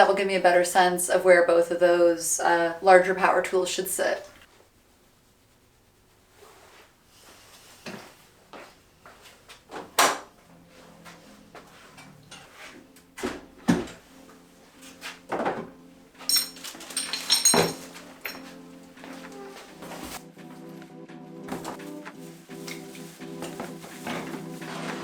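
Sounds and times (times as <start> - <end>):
metallic clinks and rattles: 16.2 - 18.6.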